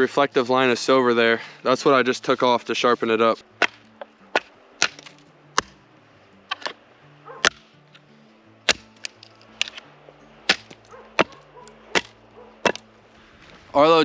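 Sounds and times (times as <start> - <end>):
axe chopping firewood: 3.6 - 5.8, 6.4 - 12.9.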